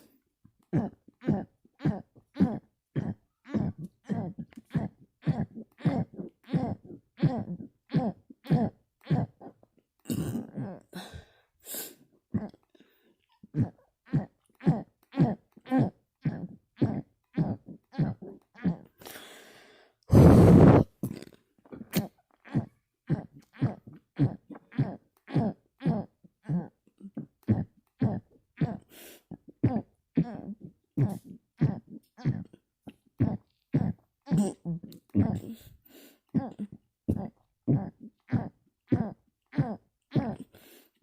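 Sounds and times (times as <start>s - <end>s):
person burping: 0.7s - 11.3s, 20.1s - 28.8s, 33.2s - 35.7s
man burping: 10.1s - 11.2s.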